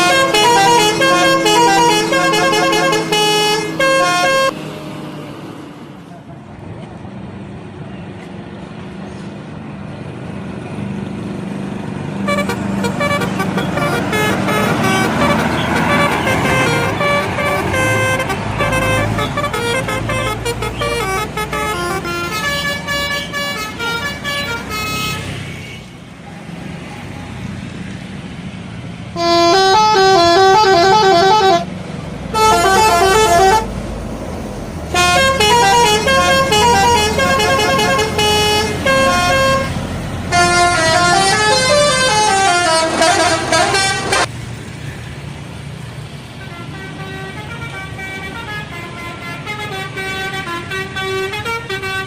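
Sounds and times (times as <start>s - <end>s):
bus air horn playing melody: 0.0s - 4.6s, 12.3s - 25.9s, 29.2s - 31.7s, 32.3s - 33.8s, 34.9s - 44.3s, 46.4s - 52.0s
diesel engine running: 0.0s - 5.5s, 28.7s - 44.4s.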